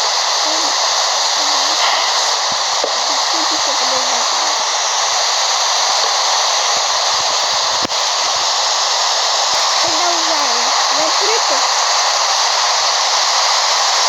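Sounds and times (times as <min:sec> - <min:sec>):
faint voices: 0:00.0 - 0:04.8, 0:09.6 - 0:11.7
loud rushing hiss: 0:00.0 - 0:14.0.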